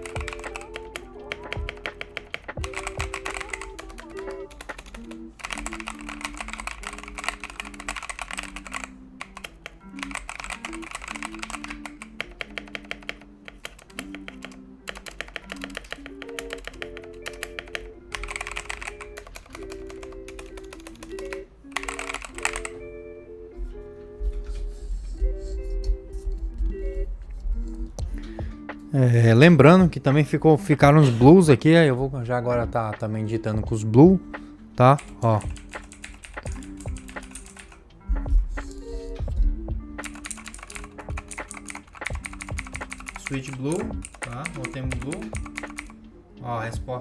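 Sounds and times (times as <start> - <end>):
fast typing on mechanical keyboard: 0.0 - 22.8, 34.9 - 37.8, 40.0 - 46.0
lo-fi music: 0.0 - 47.0.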